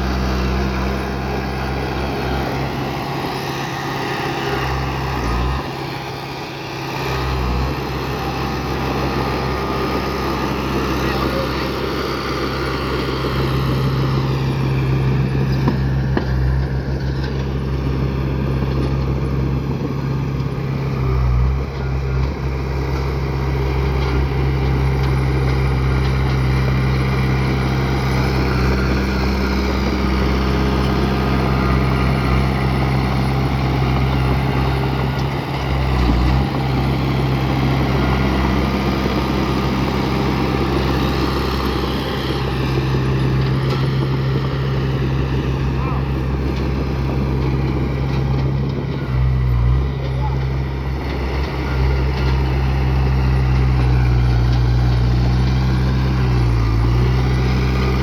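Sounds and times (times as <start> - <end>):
heavy diesel engine running: 0.0 - 58.0.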